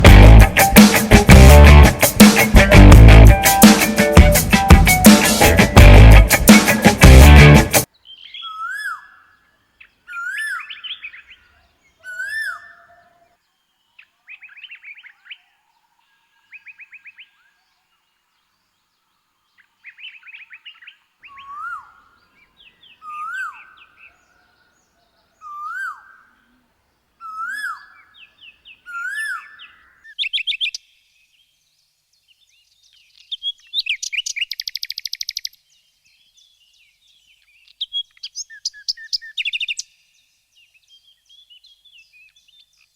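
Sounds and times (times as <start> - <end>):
songbirds calling: 7.8 - 42.9
bird chattering: 33.8 - 35.6.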